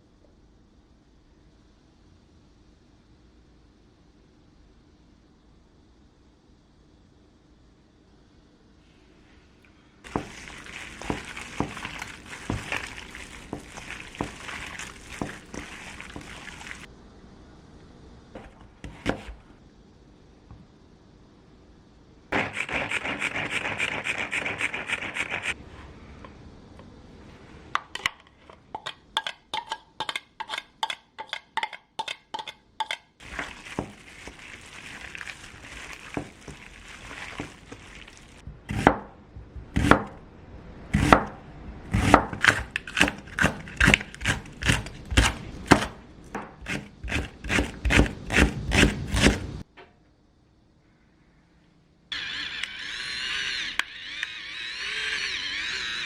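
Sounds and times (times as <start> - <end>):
knife chopping on cutting board: 18.4 - 19.4, 38.7 - 39.1, 41.9 - 49.6.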